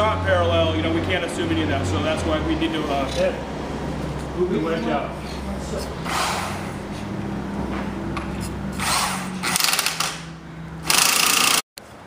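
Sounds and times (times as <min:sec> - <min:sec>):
woodworking tool bursts: 0:08.8 - 0:11.6.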